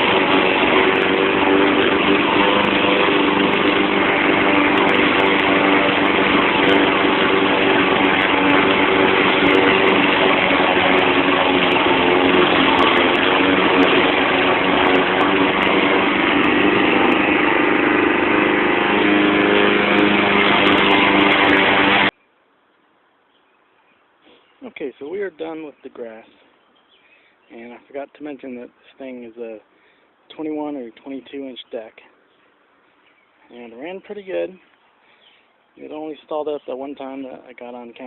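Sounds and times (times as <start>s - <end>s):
lawn mower engine running: 0.0s - 22.2s.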